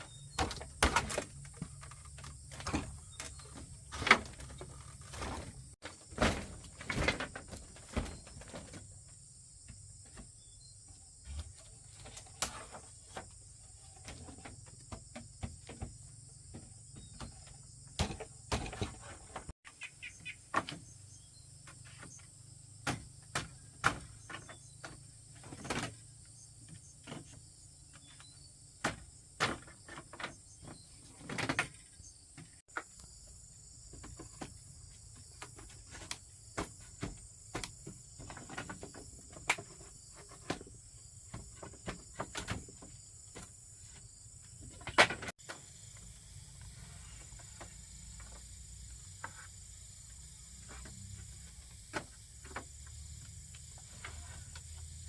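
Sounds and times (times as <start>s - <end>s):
high insect drone: 20.9s - 55.0s.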